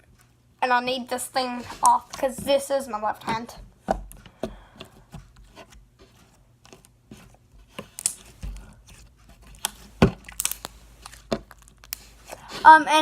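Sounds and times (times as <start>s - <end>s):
slime squeezed with sticky pops: 9.6s - 12.3s.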